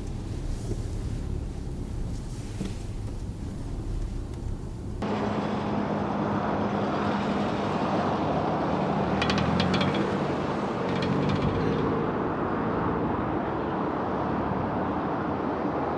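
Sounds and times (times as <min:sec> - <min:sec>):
car engine humming: 0:00.0 - 0:13.7
rapid steering rattle: 0:08.8 - 0:12.2.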